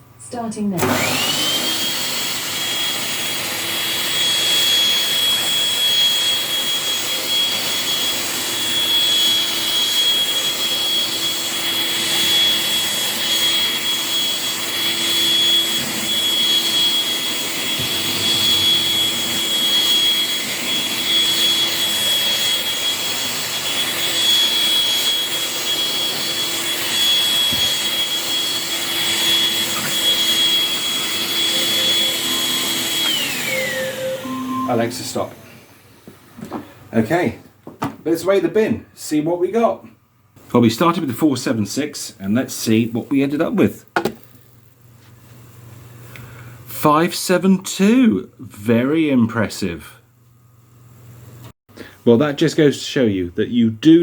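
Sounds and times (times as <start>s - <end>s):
upright vacuum cleaner running: 0.8s - 36.9s, 42.7s - 44.7s.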